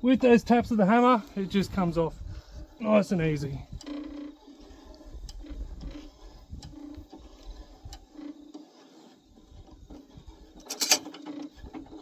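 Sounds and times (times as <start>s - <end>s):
metal clatter: 10.6s - 11.8s.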